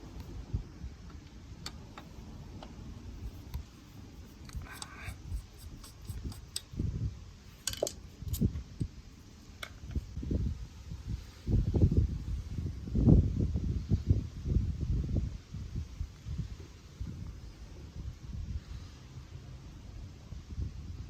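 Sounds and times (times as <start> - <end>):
short scraping rustle: 3.2 - 6.8.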